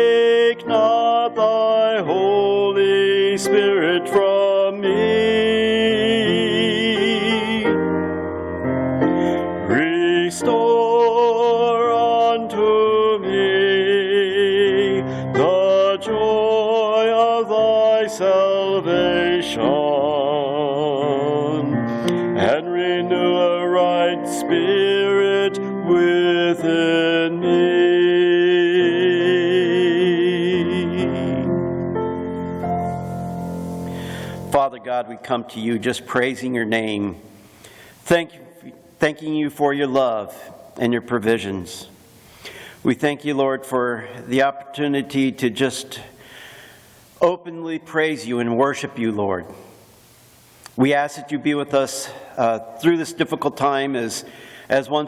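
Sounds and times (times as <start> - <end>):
person singing with vibrato: 0.0 - 8.2, 9.0 - 37.3
keyboard accompaniment: 0.0 - 37.9.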